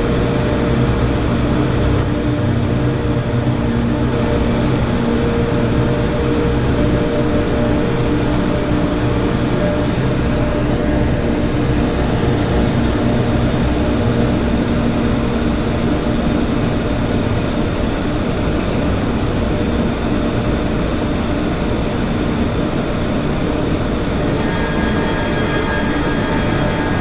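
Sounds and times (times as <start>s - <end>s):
motor droning hum: 24.1s - 27.0s.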